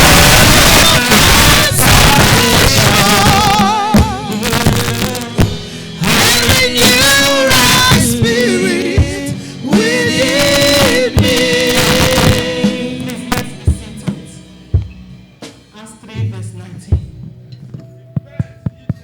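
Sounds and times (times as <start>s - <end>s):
person singing with vibrato: 0.0s - 14.5s
drum hits: 0.0s - 15.9s, 17.0s - 19.0s
band playing: 0.0s - 19.0s.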